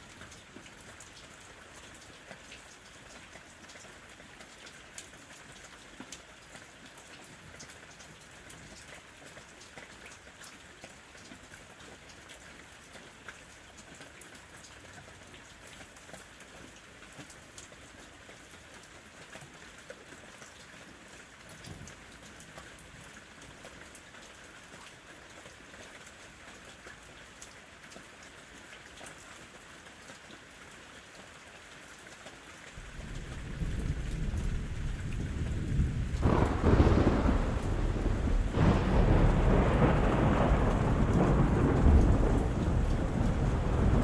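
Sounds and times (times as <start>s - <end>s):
light rain hiss: 0.0s - 44.0s
rolling thunder: 32.8s - 44.0s.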